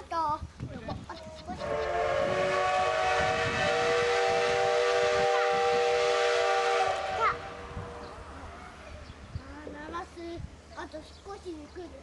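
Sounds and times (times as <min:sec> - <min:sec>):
steam locomotive whistle: 0:01.6 - 0:08.2.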